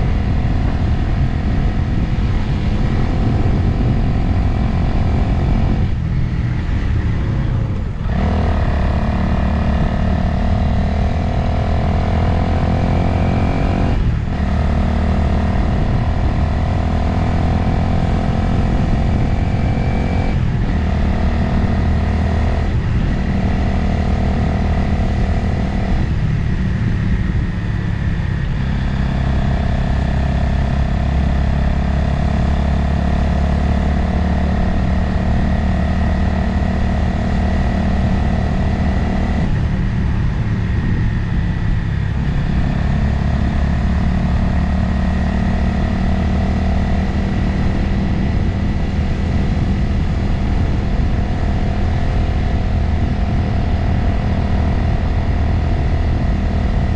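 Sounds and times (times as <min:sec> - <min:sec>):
motorcycle engine running: 0:00.0 - 0:56.9
wind noise: 0:00.0 - 0:56.9.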